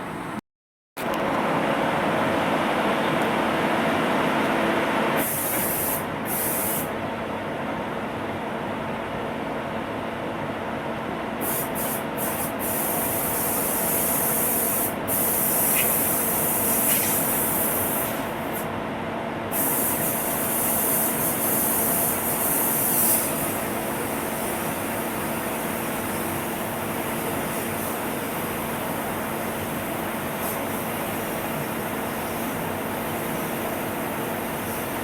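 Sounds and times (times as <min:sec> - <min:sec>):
air spray gun hissing: 0:05.2 - 0:06.9, 0:11.4 - 0:18.3, 0:19.5 - 0:26.5, 0:27.1 - 0:28.6, 0:29.3 - 0:35.0.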